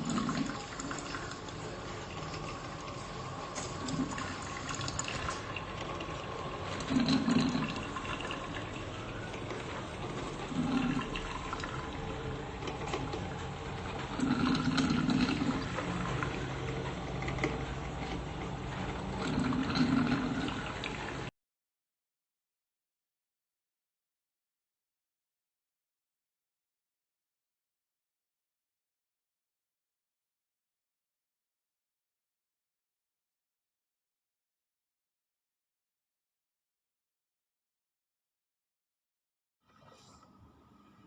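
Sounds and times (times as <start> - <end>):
coffee maker gurgling: 0.0 - 21.3
coffee maker hissing: 0.0 - 21.3.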